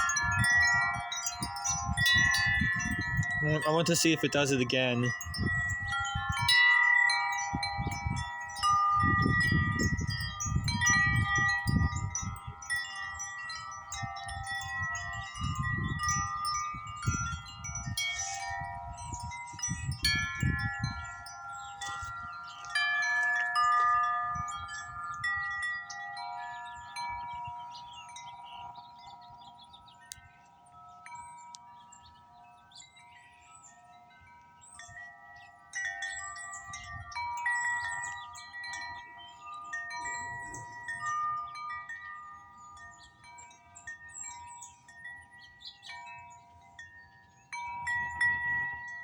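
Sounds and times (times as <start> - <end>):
wind rumble on microphone: 0.0 - 30.4, 34.6 - 42.2
wind chime ringing: 0.0 - 49.0.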